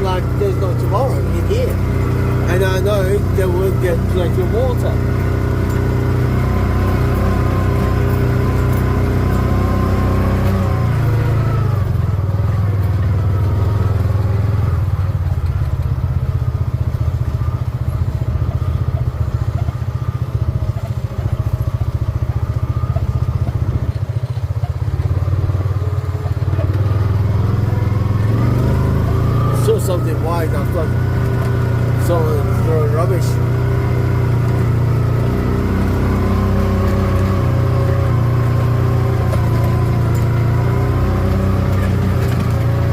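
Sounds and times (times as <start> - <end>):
vehicle engine running: 0.0 - 42.9.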